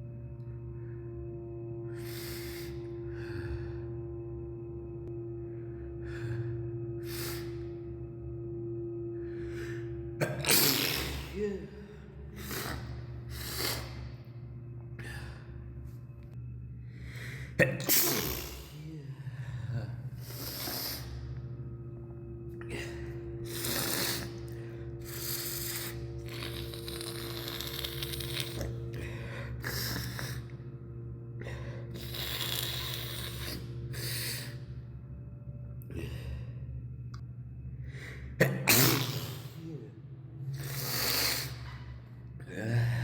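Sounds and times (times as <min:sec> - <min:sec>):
steady low hum: 0:00.0 - 0:43.0
person breathing hard and sniffling: 0:01.8 - 0:04.1, 0:05.5 - 0:08.1, 0:09.1 - 0:16.1, 0:16.8 - 0:21.6, 0:22.5 - 0:35.1, 0:40.4 - 0:43.0
loud sneeze: 0:17.6 - 0:18.6, 0:38.4 - 0:39.6.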